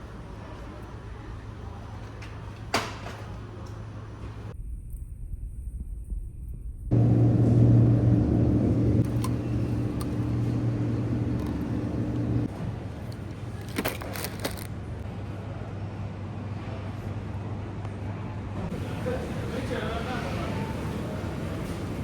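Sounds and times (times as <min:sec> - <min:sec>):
low mechanical hum: 0:00.0 - 0:22.0.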